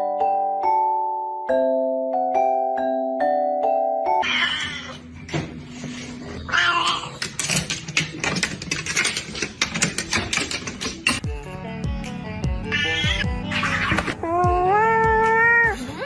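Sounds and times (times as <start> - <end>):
clicks and rattles: 6.9 - 11.3
cat meowing: 12.7 - 13.3.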